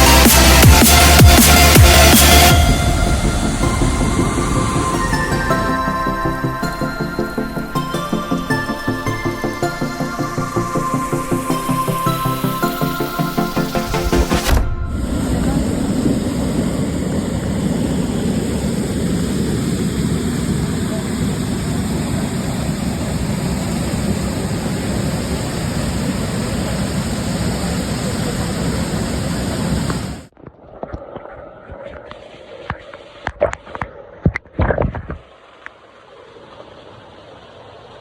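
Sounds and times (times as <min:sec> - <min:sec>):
waterfall roaring: 0:02.0 - 0:30.3.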